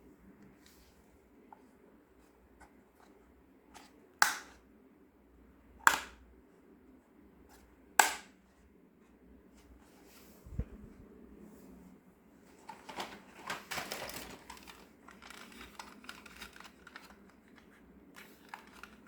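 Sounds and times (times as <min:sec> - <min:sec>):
plastic toy pieces clacking: 0:13.4 - 0:19.0.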